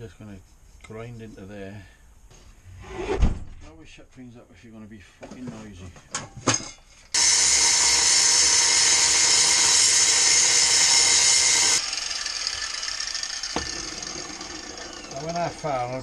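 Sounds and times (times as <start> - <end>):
angle grinder grinding steel: 7.1 - 16.0.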